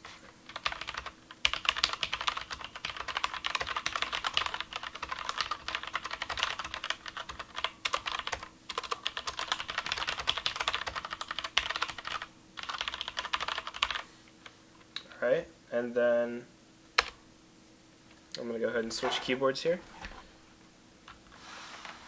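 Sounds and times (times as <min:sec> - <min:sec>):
mechanical keyboard typing: 0:00.5 - 0:14.0.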